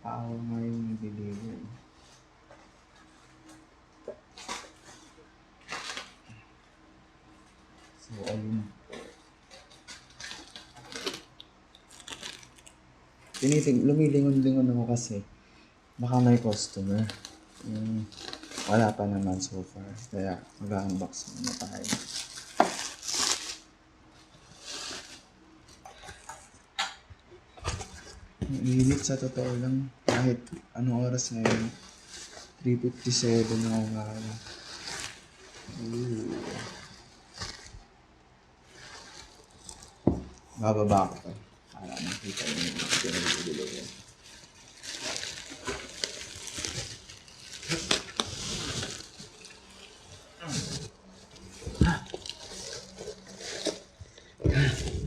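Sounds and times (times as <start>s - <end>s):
packaging rustling: 8.0s - 14.2s, 16.1s - 19.4s, 20.0s - 26.6s, 38.6s - 55.0s
cardboard box rustling and crinkling: 42.1s - 54.0s.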